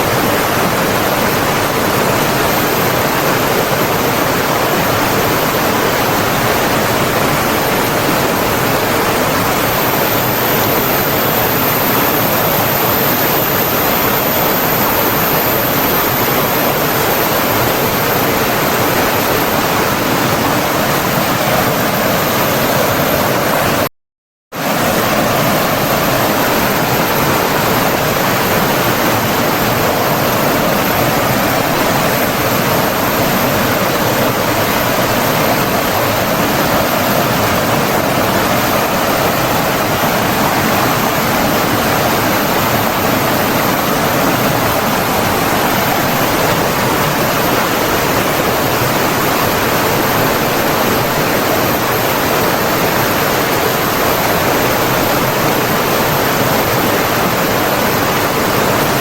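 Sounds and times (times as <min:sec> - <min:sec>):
rushing stream water: 0:24.6 - 0:59.0.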